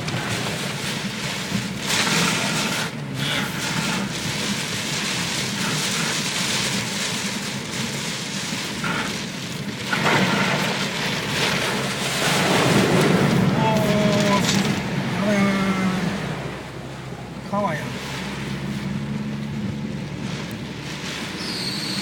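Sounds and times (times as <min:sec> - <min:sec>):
heavy rain: 0:00.0 - 0:22.0
rushing water: 0:08.7 - 0:22.0.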